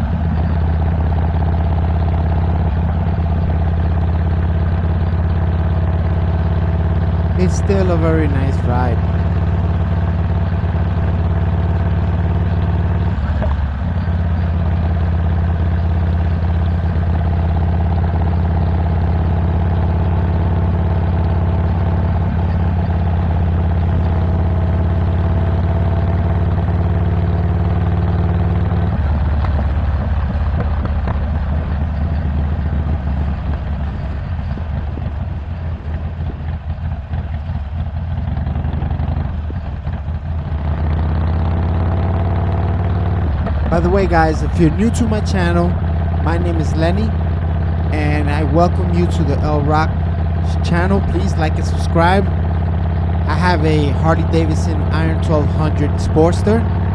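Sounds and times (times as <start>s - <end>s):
motorcycle engine running: 0.0s - 56.9s.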